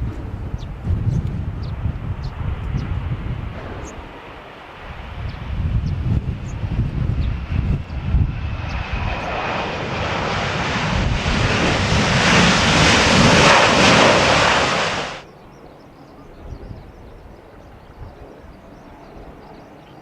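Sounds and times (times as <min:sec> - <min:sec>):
jet engine roar: 0:00.0 - 0:15.3
wind buffeting microphone: 0:00.0 - 0:15.5, 0:16.1 - 0:19.8.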